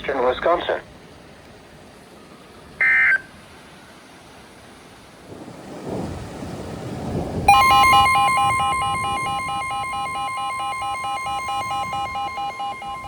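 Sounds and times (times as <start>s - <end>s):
weather radio alert tone: 2.8s - 3.2s, 7.5s - 13.0s
short electronic tone burst: 7.5s - 13.0s.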